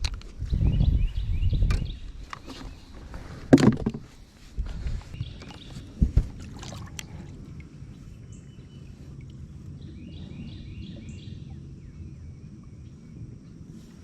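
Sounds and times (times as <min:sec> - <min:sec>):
wind and water rumble: 0:00.0 - 0:14.0
dull knocks on a boat: 0:03.5 - 0:04.0.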